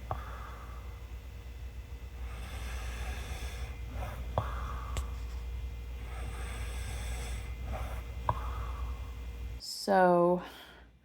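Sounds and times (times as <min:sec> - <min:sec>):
person breathing through nose: 0:02.2 - 0:05.2, 0:06.0 - 0:09.1.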